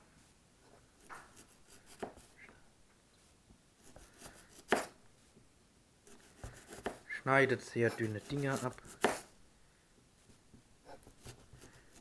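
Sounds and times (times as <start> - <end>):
knife cutting apple slices: 1.0 - 2.3, 3.8 - 5.0, 6.1 - 7.1, 7.8 - 9.3, 10.9 - 12.0.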